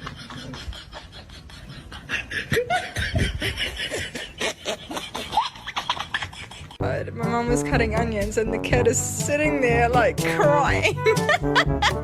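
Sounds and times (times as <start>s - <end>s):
people laughing: 0.0s - 6.8s, 10.2s - 12.0s.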